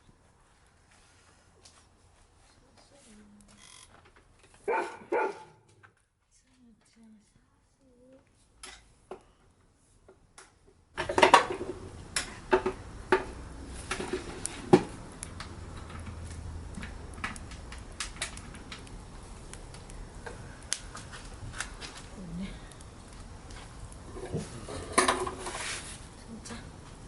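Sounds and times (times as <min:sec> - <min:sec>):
campfire crackling and popping: 0:03.4 - 0:05.0, 0:08.1 - 0:27.0.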